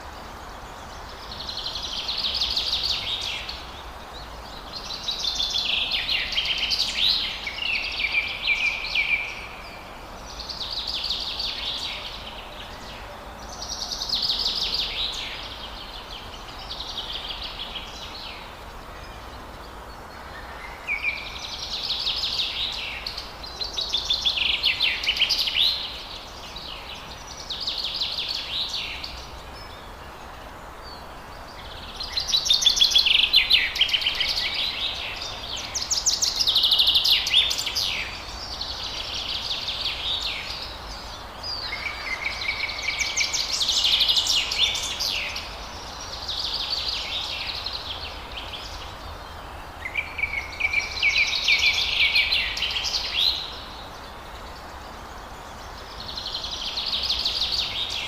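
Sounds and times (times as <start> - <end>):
faint background hiss: 0.0 - 58.0
songbirds trilling: 0.0 - 58.0.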